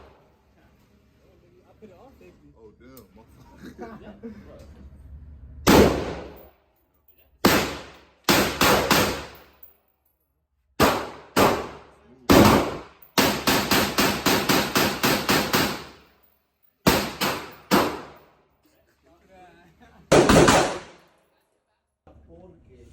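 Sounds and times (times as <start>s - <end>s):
gunshots with ringing echo: 5.7s - 6.4s, 7.4s - 9.4s, 10.8s - 16.0s, 20.1s - 21.0s.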